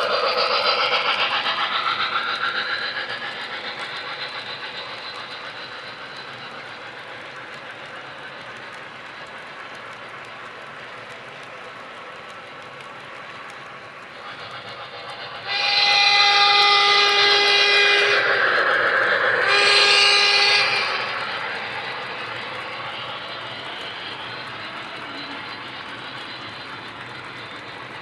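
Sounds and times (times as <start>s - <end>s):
model train running rumble: 0.0s - 28.0s
train whistle blasts: 14.8s - 23.3s.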